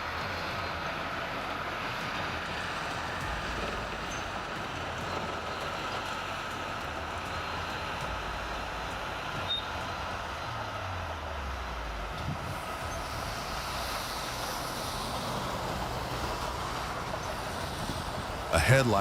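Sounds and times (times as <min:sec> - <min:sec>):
bulldozer diesel engine: 0:00.0 - 0:19.0
steady rushing noise: 0:06.5 - 0:19.0.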